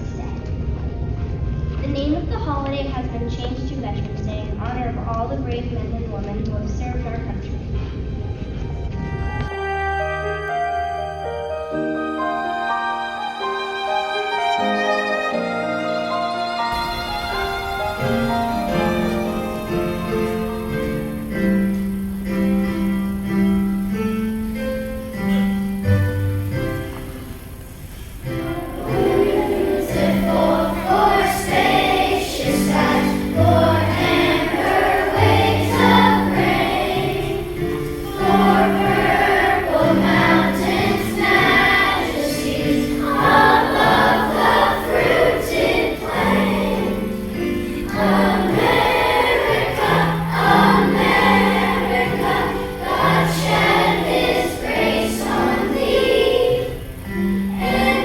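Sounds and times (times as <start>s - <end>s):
instrumental accompaniment: 7.7s - 58.0s
choir singing: 9.2s - 21.4s, 28.3s - 58.0s.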